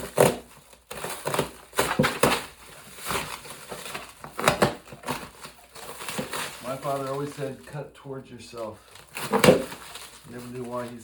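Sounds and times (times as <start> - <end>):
cardboard box being cut open: 0.0 - 7.5, 9.0 - 10.9.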